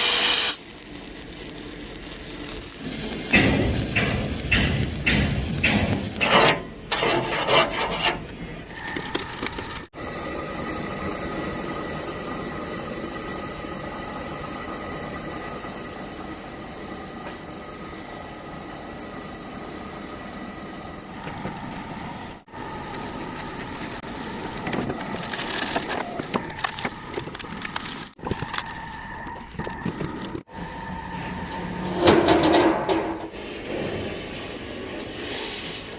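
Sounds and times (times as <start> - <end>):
faint tool whine: 8.8 - 27.0.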